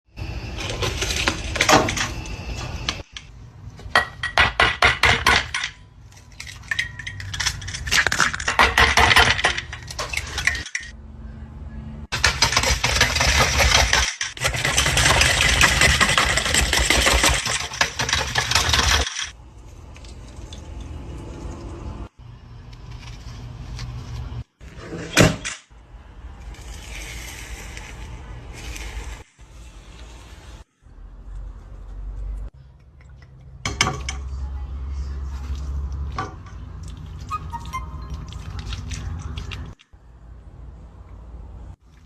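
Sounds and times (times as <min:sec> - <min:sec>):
kitchen utensils and dishes clinking: 0:03.9 - 0:11.0, 0:12.2 - 0:19.4.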